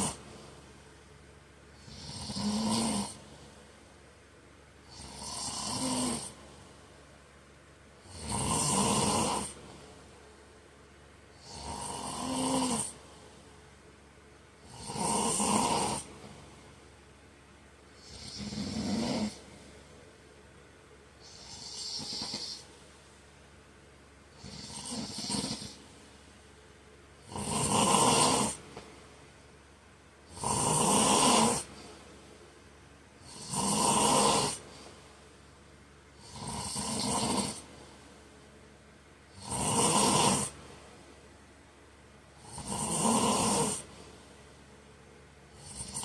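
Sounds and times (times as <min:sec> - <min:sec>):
man snoring: 0:00.0 - 0:00.4, 0:01.8 - 0:03.6, 0:04.8 - 0:06.6, 0:08.0 - 0:09.8, 0:11.3 - 0:13.2, 0:14.6 - 0:16.4, 0:18.0 - 0:19.6, 0:21.2 - 0:22.7, 0:24.3 - 0:25.8, 0:27.2 - 0:28.6, 0:30.3 - 0:31.9, 0:33.2 - 0:34.9, 0:36.2 - 0:37.7, 0:39.3 - 0:40.6, 0:42.4 - 0:44.0, 0:45.5 - 0:46.0.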